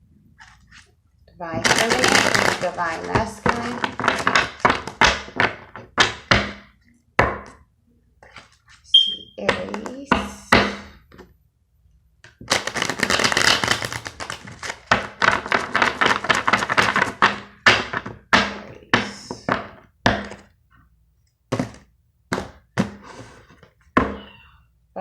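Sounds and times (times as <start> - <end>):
cards being shuffled: 1.6 - 5.6, 8.2 - 8.8, 12.3 - 18.0.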